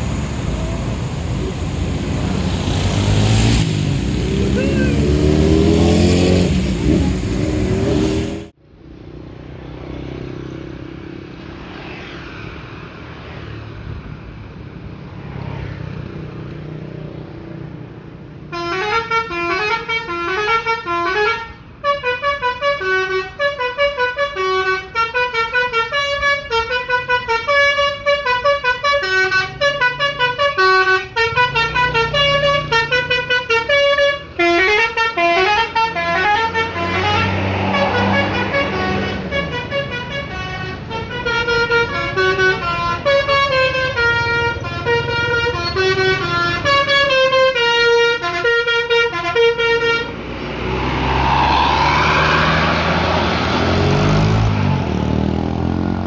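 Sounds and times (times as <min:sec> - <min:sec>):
bus engine rumble: 0:00.0 - 0:08.7, 0:17.3 - 0:56.0
multi-tone musical bus horn: 0:04.2 - 0:08.6, 0:18.5 - 0:50.6.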